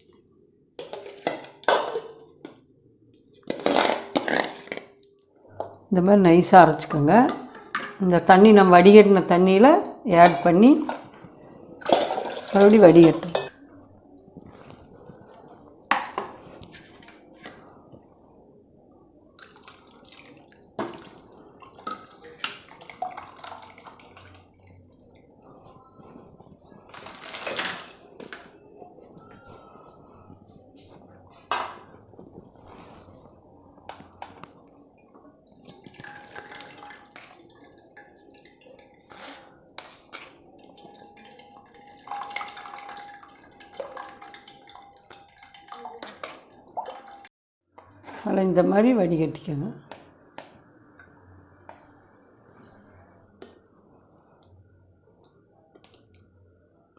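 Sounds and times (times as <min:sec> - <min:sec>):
soup splashing and dripping: 0:19.4 - 0:25.2, 0:35.6 - 0:47.3.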